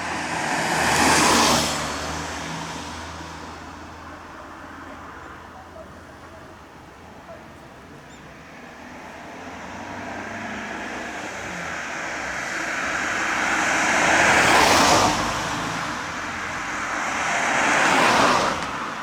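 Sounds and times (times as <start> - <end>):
road vehicles passing close: 0.0 - 19.0.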